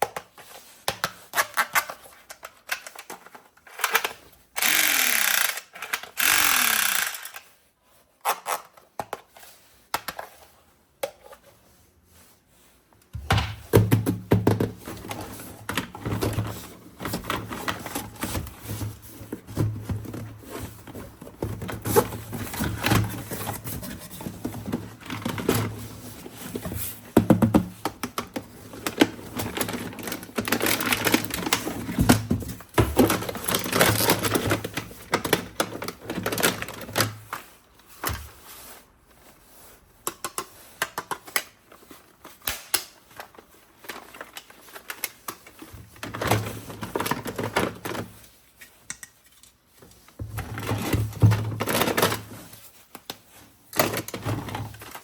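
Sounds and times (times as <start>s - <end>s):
plastic packaging handled: 13.3s - 55.0s.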